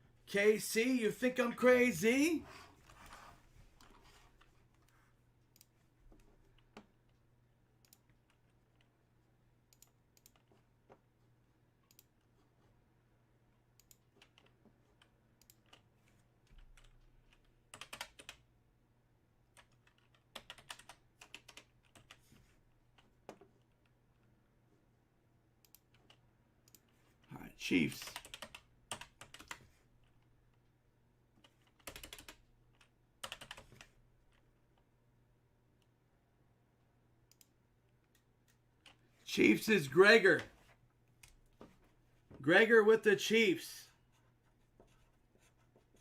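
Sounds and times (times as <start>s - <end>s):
keyboard typing clicks: 31.5s - 33.9s.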